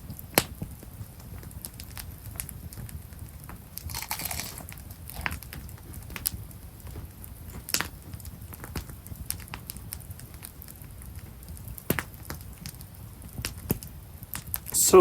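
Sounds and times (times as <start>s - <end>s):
campfire crackling and popping: 0.0s - 15.0s
person crunching and chewing food: 3.9s - 5.4s.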